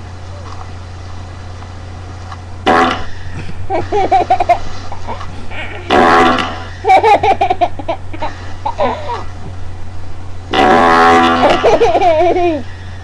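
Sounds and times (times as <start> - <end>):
buzzy fart sound: 2.6 - 6.9, 10.5 - 12.9
child giggling: 3.7 - 5.9, 6.8 - 9.4, 11.4 - 12.7.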